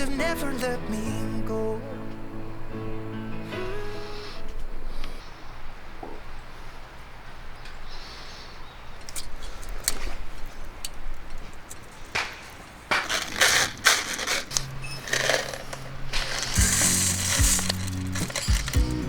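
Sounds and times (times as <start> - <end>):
crackling and rustling clatter: 9.0 - 18.8.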